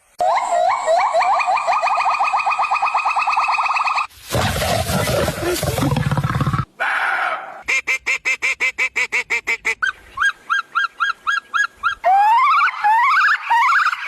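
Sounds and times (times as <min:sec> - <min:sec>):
loud rising animal calls: 0:04.3 - 0:07.6.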